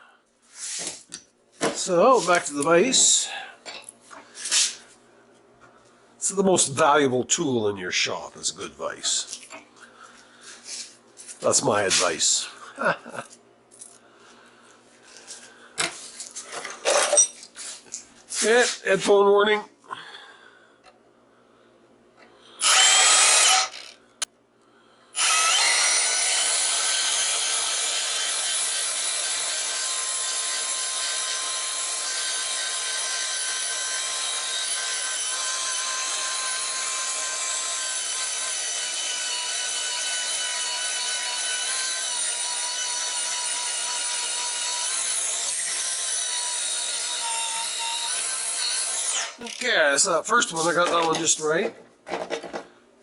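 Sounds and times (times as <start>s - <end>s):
power tool cutting steel: 22.6s - 24.0s, 25.2s - 49.8s.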